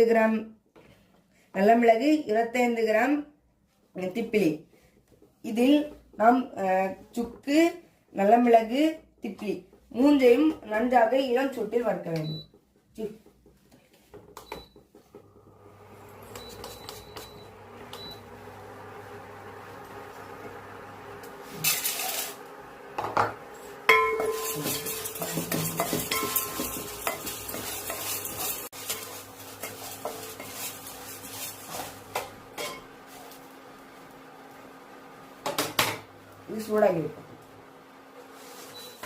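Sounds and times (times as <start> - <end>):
metal spoon scraping a pan: 21.5 - 22.4, 24.1 - 32.9.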